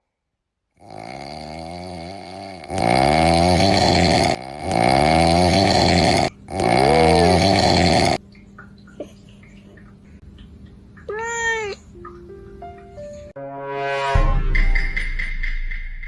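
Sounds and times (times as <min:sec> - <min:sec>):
loud snoring: 0:00.8 - 0:08.2
cat meowing: 0:11.1 - 0:11.8.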